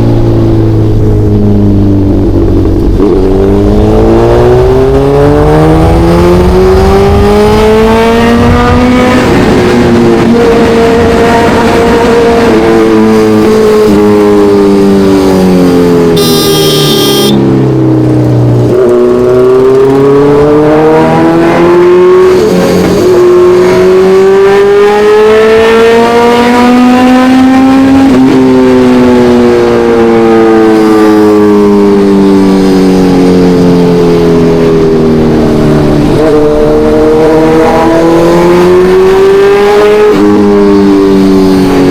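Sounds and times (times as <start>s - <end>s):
motorcycle engine revving: 2.2s - 17.7s
brief high-pitched tone: 16.2s - 17.5s.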